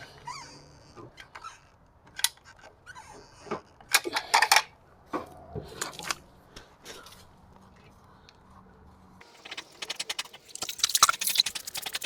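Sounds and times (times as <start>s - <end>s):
sharp scraping clicks: 9.2s - 12.0s.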